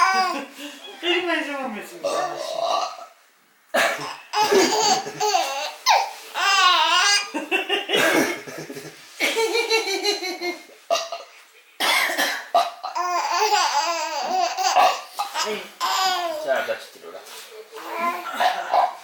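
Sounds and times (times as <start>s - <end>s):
adult belching: 2.4s - 3.1s
baby laughing hysterically: 4.3s - 10.6s, 12.8s - 16.4s.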